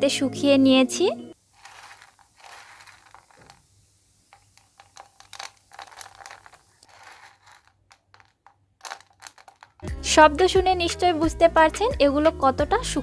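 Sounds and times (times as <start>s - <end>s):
hard candy cubes rattling on tray: 1.5s - 3.7s, 4.3s - 9.9s.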